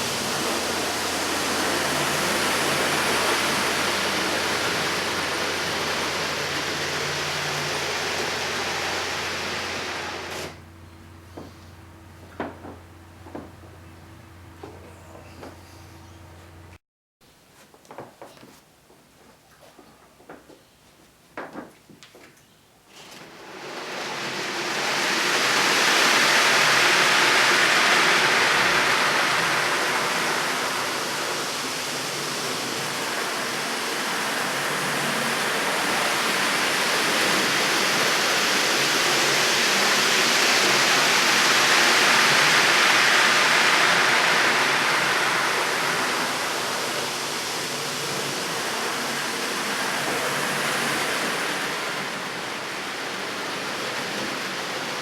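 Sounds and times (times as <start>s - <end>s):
rushing hiss: 0.0s - 10.6s, 23.3s - 55.0s.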